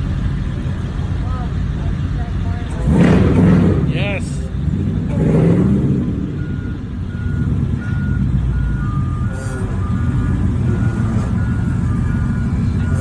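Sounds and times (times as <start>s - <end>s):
vehicle engine idling: 0.0s - 13.0s
short electronic beeps: 6.2s - 13.0s.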